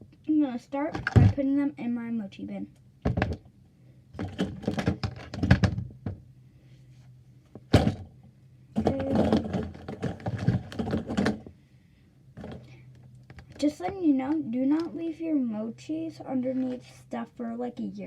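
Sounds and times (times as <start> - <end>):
toys clattering into a bin: 4.2 - 5.9, 7.7 - 8.1, 8.8 - 11.5.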